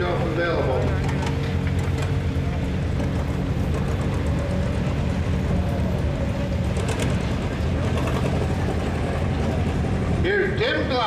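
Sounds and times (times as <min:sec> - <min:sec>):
tractor engine running: 0:00.0 - 0:11.0.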